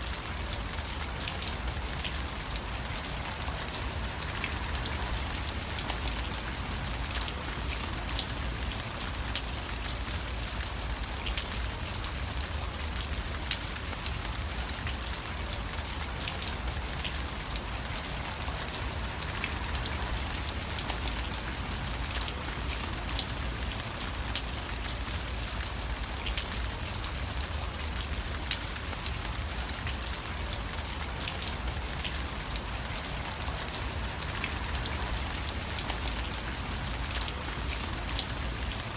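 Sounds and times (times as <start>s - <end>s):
raindrops ticking: 0.0s - 38.9s
steady rain patter: 0.0s - 38.9s.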